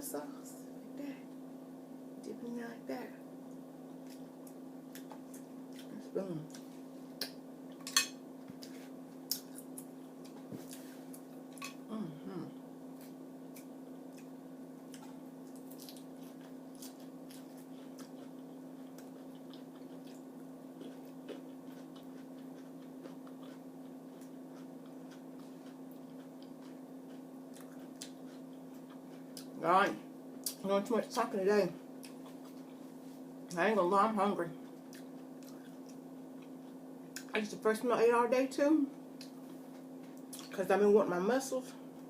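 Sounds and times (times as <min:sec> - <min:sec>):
steady low hum: 0:00.0 - 0:42.0
soft chewing mouth sounds: 0:03.4 - 0:11.9, 0:12.9 - 0:29.6, 0:32.0 - 0:33.6, 0:34.5 - 0:37.4, 0:38.9 - 0:40.6.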